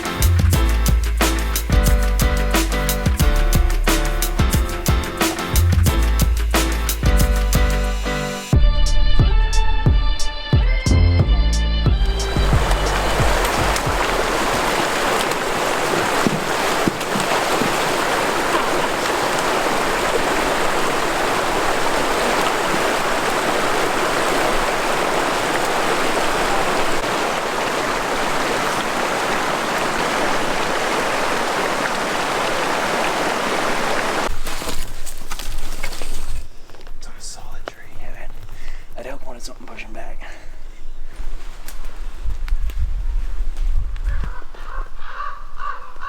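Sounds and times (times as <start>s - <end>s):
rushing water stream: 12.0s - 36.4s.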